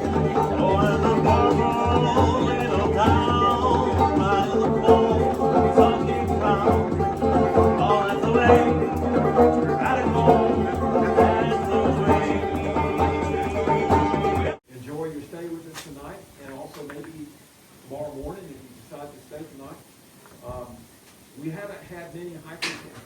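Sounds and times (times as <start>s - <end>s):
country music with singing: 0.0s - 14.6s.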